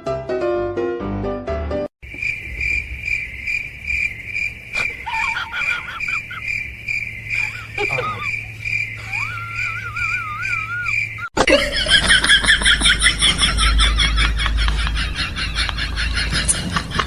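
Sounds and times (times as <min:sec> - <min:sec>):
piano music: 0:00.0 - 0:01.9
cricket-like chirping: 0:02.0 - 0:17.0
wavering high-pitched calls: 0:02.2 - 0:11.3.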